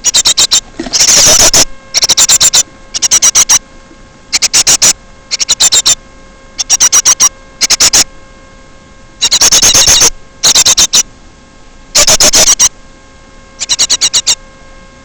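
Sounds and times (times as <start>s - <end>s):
small birds chattering: 0.0s - 3.6s, 4.3s - 6.0s, 6.6s - 8.1s, 9.2s - 11.1s, 11.9s - 12.7s, 13.6s - 14.4s.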